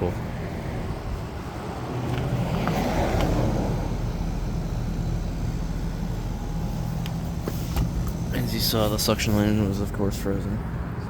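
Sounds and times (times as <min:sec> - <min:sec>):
heat pump low hum: 0:00.2 - 0:09.9.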